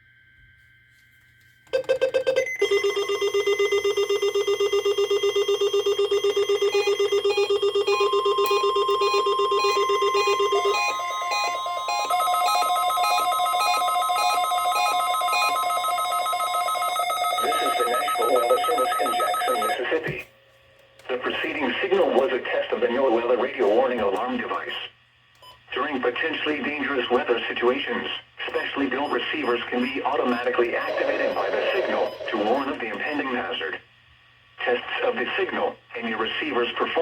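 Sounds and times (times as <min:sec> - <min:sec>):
steady warning alarm tone: 0:00.0 - 0:19.8, 0:28.6 - 0:33.4
pulsing electronic alarm beeps: 0:01.7 - 0:19.8, 0:30.8 - 0:33.2.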